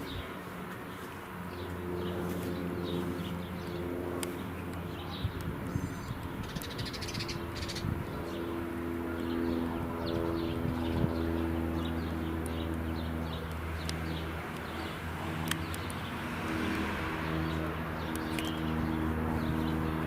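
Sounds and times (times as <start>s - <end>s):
low engine hum: 0.0s - 20.0s
small birds chirping: 0.0s - 20.0s
sharp clicks: 4.2s - 7.4s, 12.3s - 18.6s.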